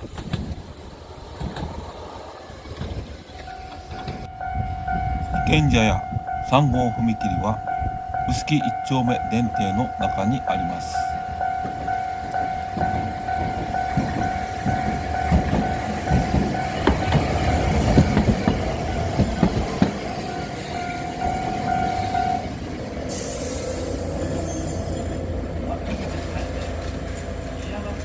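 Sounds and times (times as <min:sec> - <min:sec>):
tram rumbling and clacking: 0:00.0 - 0:28.0
level crossing warning bell: 0:03.4 - 0:25.6.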